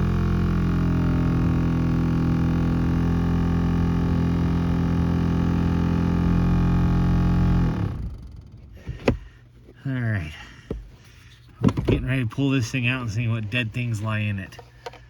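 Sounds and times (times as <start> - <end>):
blower fan buzzing drone: 0.0 - 9.5.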